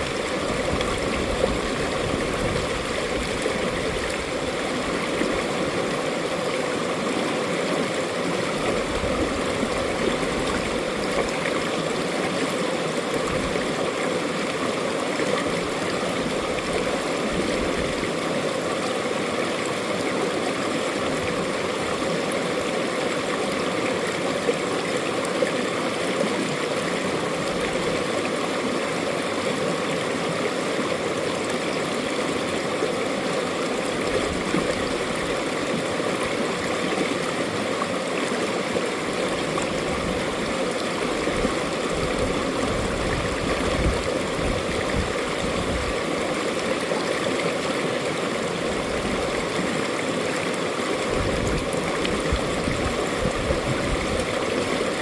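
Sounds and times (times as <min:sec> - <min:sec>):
stream flowing over rocks: 0:00.0 - 0:55.0.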